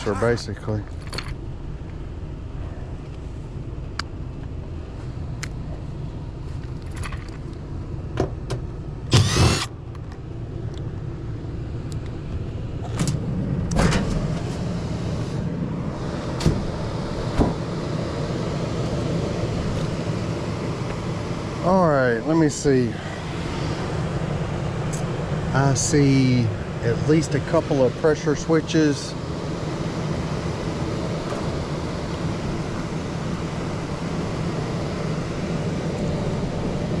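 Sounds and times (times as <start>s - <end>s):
blower fan humming: 9.0s - 37.0s.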